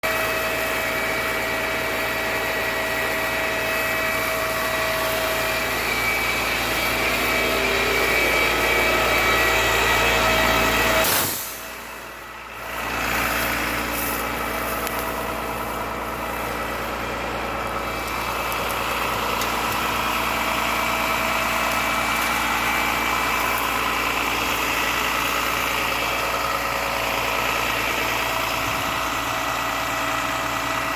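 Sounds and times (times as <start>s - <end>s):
fire truck engine idling: 0.0s - 30.9s.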